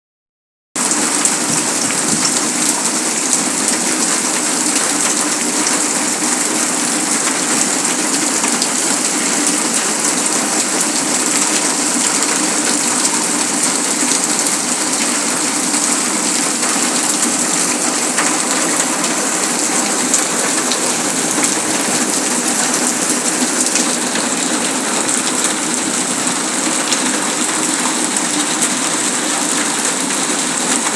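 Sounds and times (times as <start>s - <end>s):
heavy rain: 0.8s - 30.9s.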